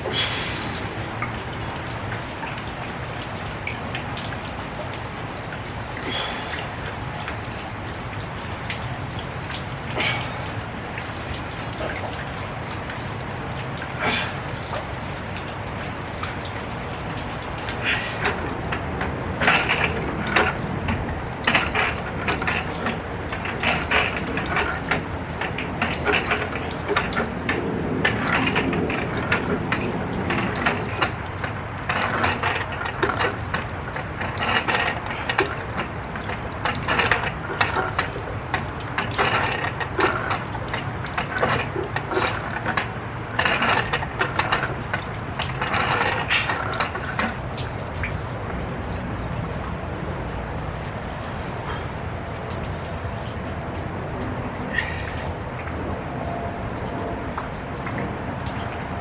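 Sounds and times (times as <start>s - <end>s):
gym machine squeaking and clanking: 18.0s - 47.4s.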